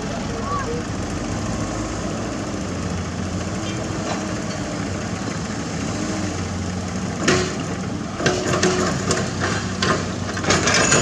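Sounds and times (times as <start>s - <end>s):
diesel machinery running: 0.0s - 11.0s
metallic clanks and knocks: 7.2s - 11.0s.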